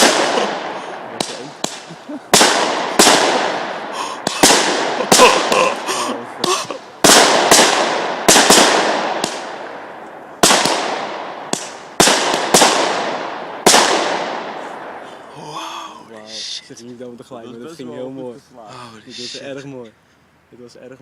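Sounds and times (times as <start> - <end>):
firework bangs with crackle: 0.0 - 5.8, 6.4 - 15.1.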